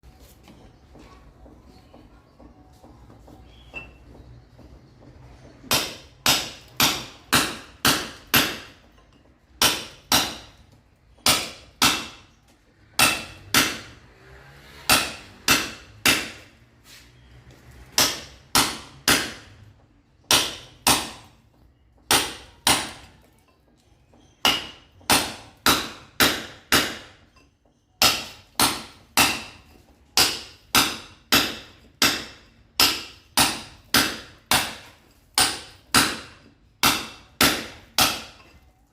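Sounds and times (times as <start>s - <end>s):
hammer breaking concrete: 5.7s - 8.8s, 9.6s - 10.6s, 11.2s - 12.3s, 13.0s - 14.0s, 14.8s - 16.4s, 18.0s - 19.5s, 20.3s - 21.3s, 22.1s - 23.3s, 24.4s - 38.6s.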